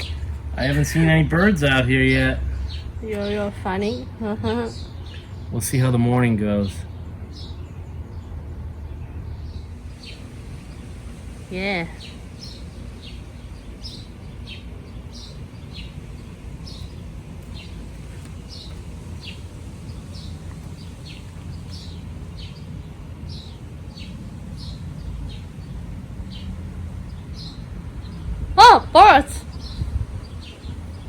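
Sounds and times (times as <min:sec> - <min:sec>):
steady low rumble: 0:00.0 - 0:31.0
small bird chirping: 0:06.9 - 0:31.0.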